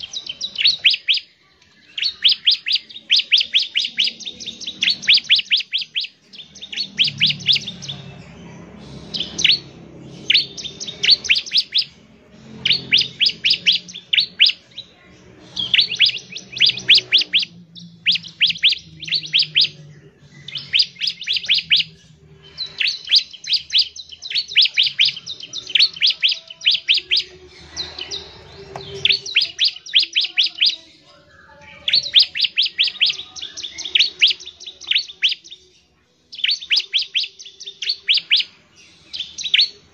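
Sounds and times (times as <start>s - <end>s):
bird singing high rapid notes: 0.0s - 39.9s.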